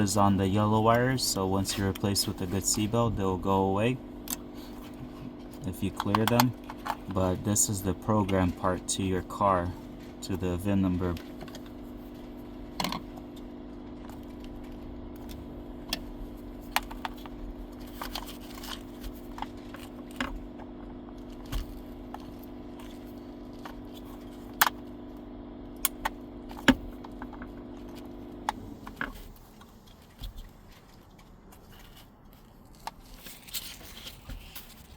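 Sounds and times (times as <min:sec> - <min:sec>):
steady hum: 0:00.0 - 0:34.6
seatbelt parts clicking and rattling: 0:04.3 - 0:07.3, 0:12.7 - 0:13.4.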